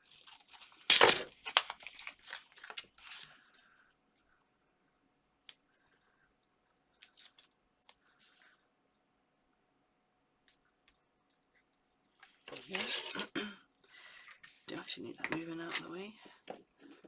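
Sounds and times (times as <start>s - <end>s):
paper crackling and rustling: 0.0s - 3.5s.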